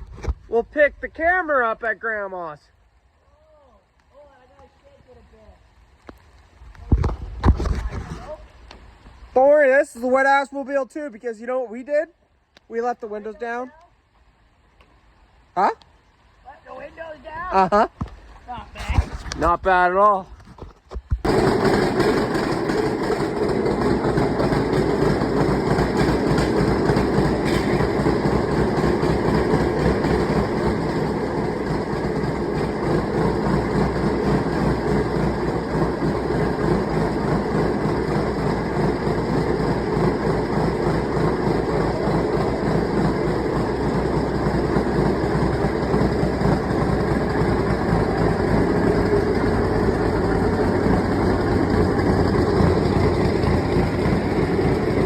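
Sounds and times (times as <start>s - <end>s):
road noise: 0.0s - 55.0s
vehicle engine running: 21.2s - 55.0s.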